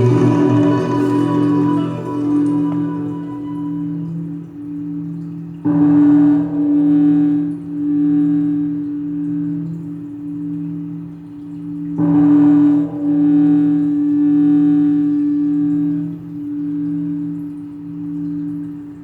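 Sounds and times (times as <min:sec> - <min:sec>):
large temple bell struck: 0:00.0 - 0:09.8, 0:11.9 - 0:16.2
deep bell hum ringing: 0:00.0 - 0:19.0.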